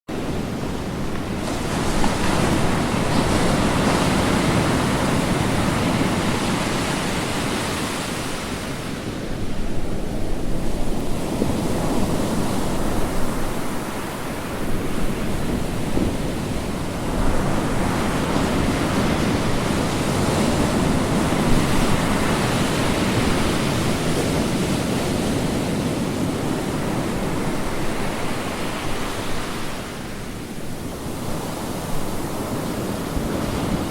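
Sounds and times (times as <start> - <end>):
ocean waves breaking on shore: 0.1 - 33.9.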